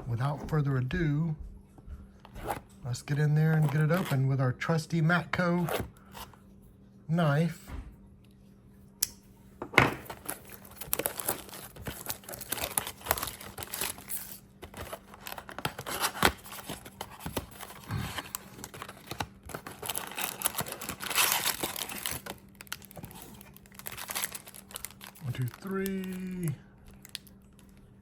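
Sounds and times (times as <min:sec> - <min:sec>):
plastic wrapping crinkling and tearing: 0:10.1 - 0:28.0.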